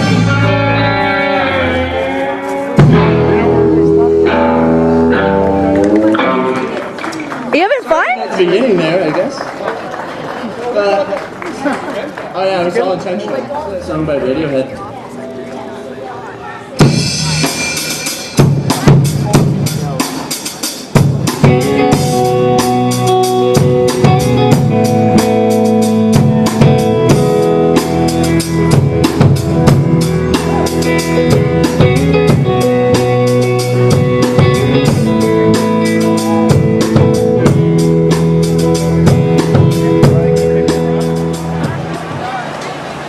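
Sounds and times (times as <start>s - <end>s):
band music: 0.0s - 43.0s
drum kit steady beat: 1.6s - 4.6s, 16.8s - 42.3s.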